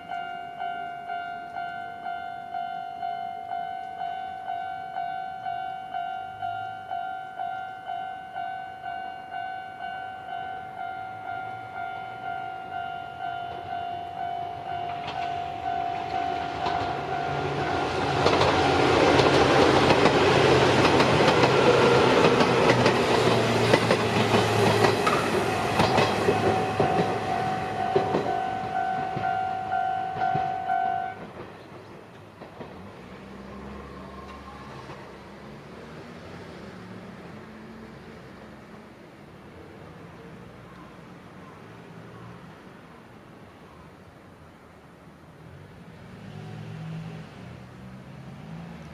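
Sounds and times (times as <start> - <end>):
level-crossing alarm bell: 0.0 - 18.1, 25.0 - 31.2
electric train passing: 0.0 - 48.9
wheels clacking over rail joints: 13.4 - 35.1.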